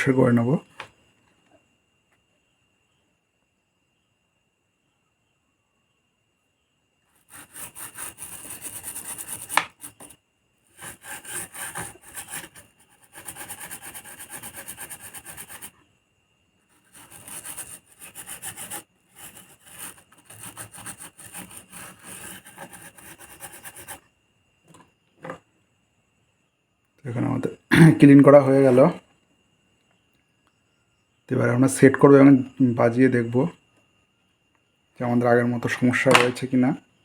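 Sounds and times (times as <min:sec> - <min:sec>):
rubbing strokes on circuit board: 0:07.2 - 0:15.8, 0:16.7 - 0:24.0.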